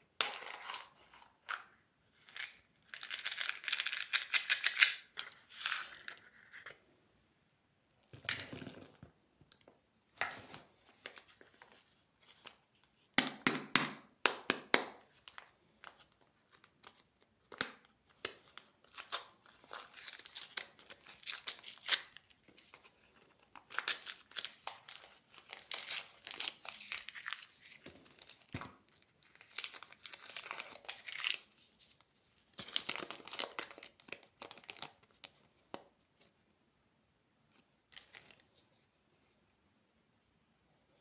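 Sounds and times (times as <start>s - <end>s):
candy wrappers crinkling: 23.6s - 31.6s, 32.5s - 35.2s.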